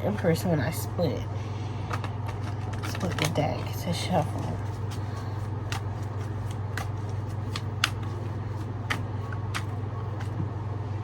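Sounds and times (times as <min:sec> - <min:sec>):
steady low hum: 0:00.0 - 0:11.0
cards being shuffled: 0:01.9 - 0:10.4
card snaps and taps: 0:05.6 - 0:10.4.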